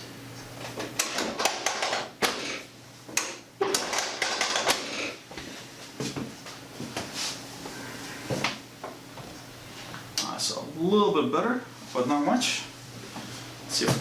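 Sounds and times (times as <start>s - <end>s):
chiropractic clicks and knocks: 0.6s - 5.0s.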